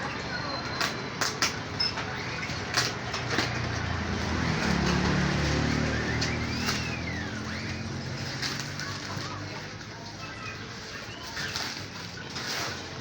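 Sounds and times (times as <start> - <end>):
vehicle engine passing by: 3.2 - 9.8.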